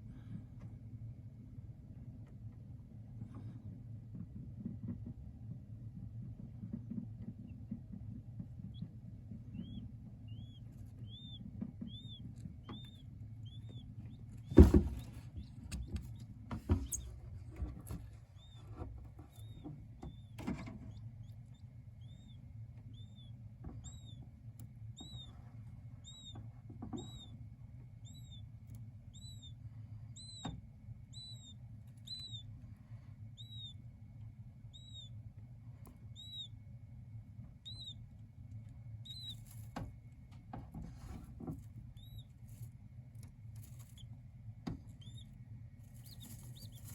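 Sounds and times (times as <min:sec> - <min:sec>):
steady low hum: 0:00.0 - 0:46.9
quail chicks peeping: 0:06.7 - 0:46.9
knocks and scrapes: 0:13.7 - 0:21.0.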